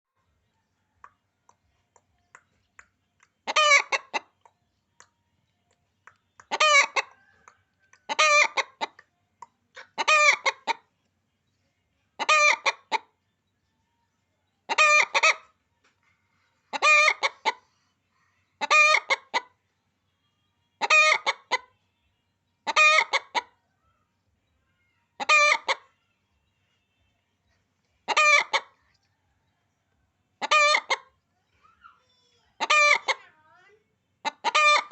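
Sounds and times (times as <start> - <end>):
hen squawking: 3.4 - 4.3, 6.4 - 7.1, 8.0 - 9.0, 9.8 - 10.8, 16.7 - 17.6, 20.8 - 21.7, 22.7 - 23.5, 25.2 - 25.9, 28.1 - 28.7, 30.4 - 31.1, 32.6 - 33.3, 34.2 - 34.9.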